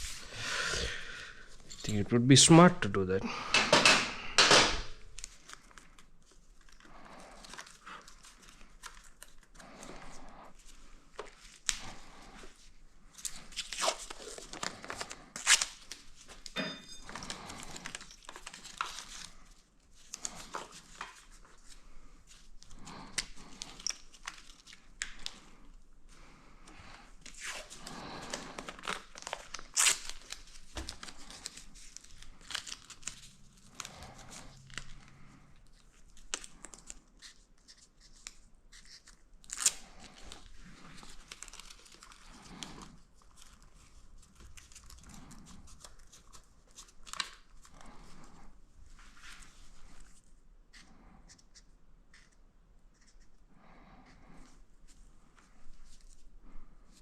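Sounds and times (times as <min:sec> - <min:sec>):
plastic crinkling and tearing: 0:04.9 - 0:25.7, 0:27.0 - 0:48.4.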